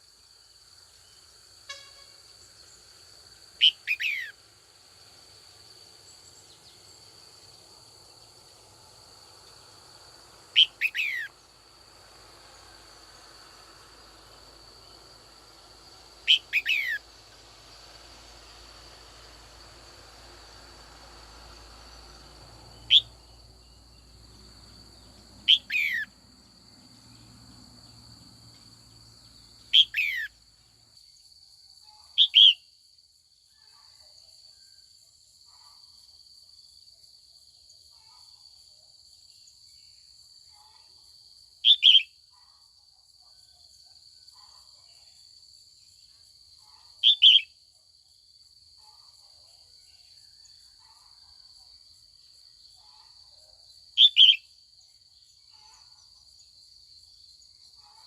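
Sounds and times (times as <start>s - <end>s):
steady high-pitched buzz: 1.1s - 30.5s.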